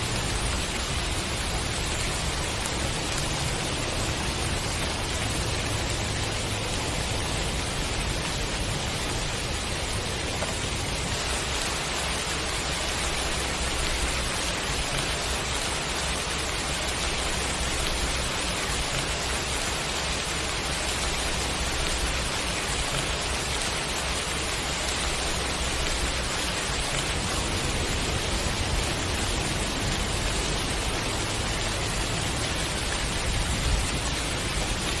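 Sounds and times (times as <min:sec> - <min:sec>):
steady rain hiss: 0:00.0 - 0:35.0.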